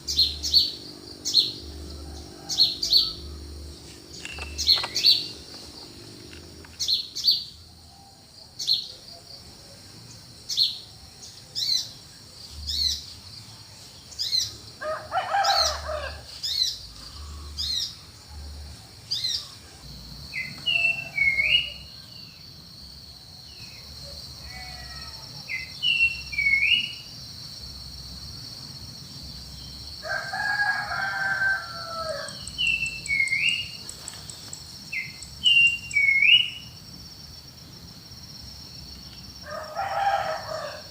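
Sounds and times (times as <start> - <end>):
hooked repeated bird calls: 0.0 - 7.6, 32.2 - 36.6
longer lower bird calls: 0.0 - 9.0, 14.1 - 22.4, 23.6 - 27.1, 29.8 - 36.8
high insect trill: 0.0 - 40.9
high bird chirps: 32.4 - 33.9.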